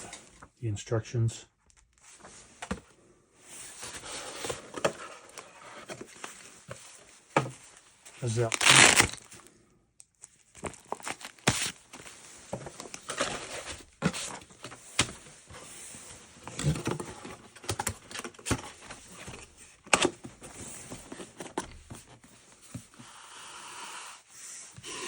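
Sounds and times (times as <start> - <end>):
packaging rustling: 8.2 - 9.5, 10.2 - 22.3.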